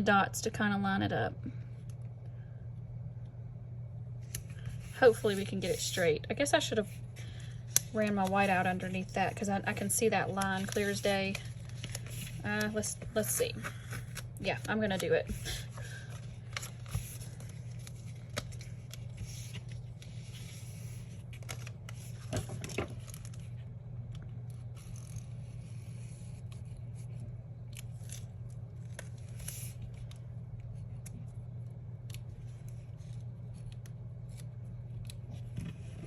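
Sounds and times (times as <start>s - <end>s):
steady low hum: 0.0s - 36.0s
correction tape scratching paper: 24.5s - 26.7s.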